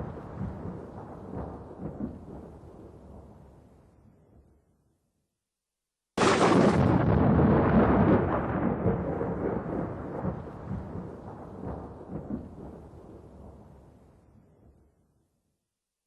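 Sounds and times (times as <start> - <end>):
thunderclap crack and rumble: 0.0 - 3.6, 6.2 - 14.8.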